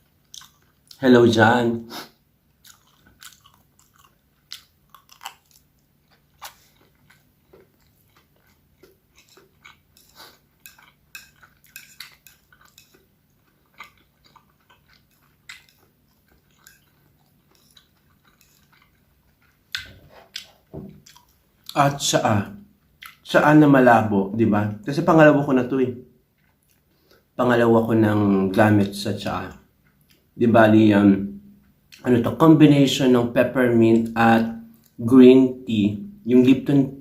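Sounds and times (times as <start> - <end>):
person chewing: 0.0 - 1.0, 1.9 - 22.0, 22.8 - 23.2, 26.3 - 27.4, 29.4 - 30.4.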